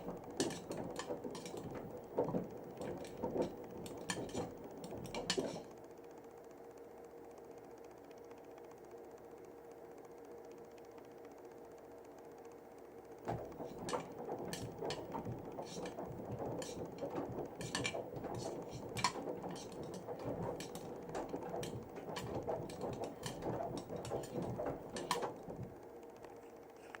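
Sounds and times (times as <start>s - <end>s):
clicks and knocks: 0.0s - 5.7s, 13.3s - 25.8s
water sloshing in washing machine: 0.0s - 5.7s, 13.3s - 25.9s.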